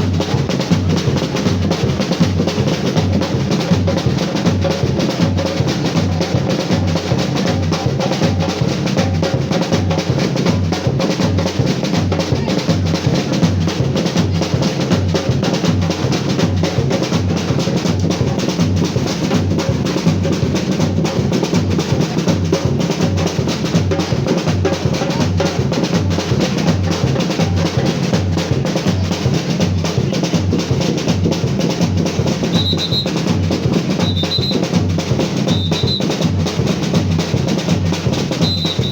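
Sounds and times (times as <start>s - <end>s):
deep bass drums: 0.0s - 38.9s
samba percussion ensemble: 0.0s - 38.9s.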